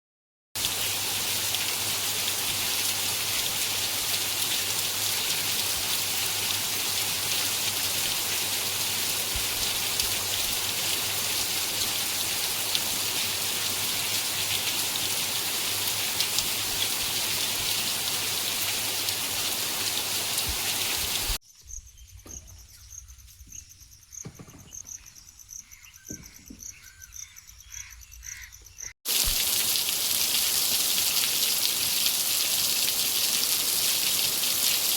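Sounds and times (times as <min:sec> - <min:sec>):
steady rain falling: 0:00.6 - 0:21.4, 0:29.1 - 0:34.9
insects chirping: 0:21.4 - 0:28.9
water dripping: 0:29.1 - 0:34.9.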